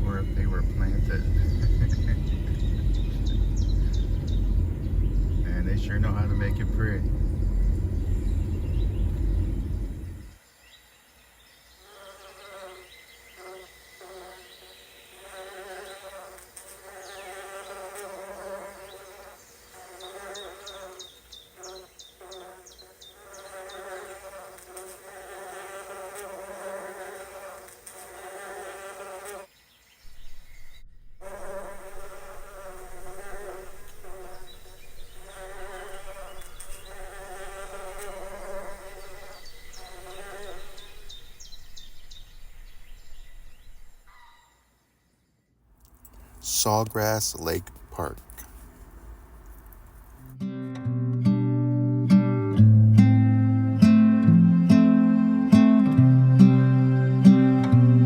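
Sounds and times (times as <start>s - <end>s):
flying insect buzzing: 11.7s - 29.6s, 31.2s - 44.1s
faint rapid high ticking calls: 45.8s - 50.3s.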